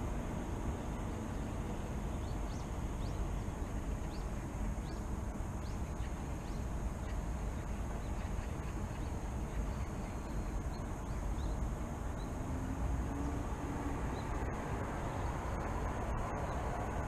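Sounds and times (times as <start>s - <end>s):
distant city traffic rumble: 0.0s - 17.0s
faint bird chirps: 3.9s - 12.4s.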